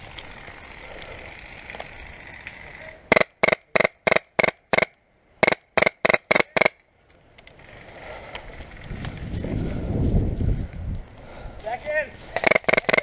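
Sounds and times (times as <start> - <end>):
low rumbling rustling noise: 7.0 - 12.4.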